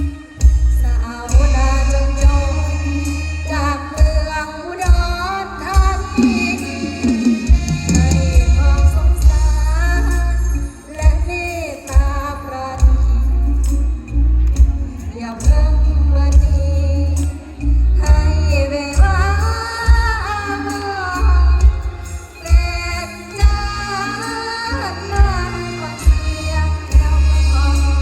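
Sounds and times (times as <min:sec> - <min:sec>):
band music with heavy bass: 0:00.0 - 0:28.0
woman singing: 0:00.0 - 0:28.0.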